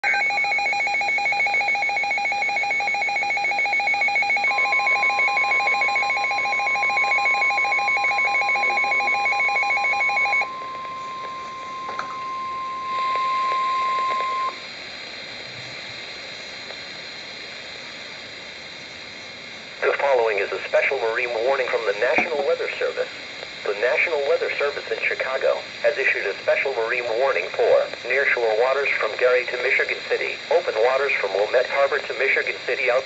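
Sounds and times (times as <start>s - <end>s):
pulsing electronic alarm: 0.0s - 14.6s
steady warning alarm tone: 0.0s - 14.7s
faint hiss: 14.5s - 33.0s.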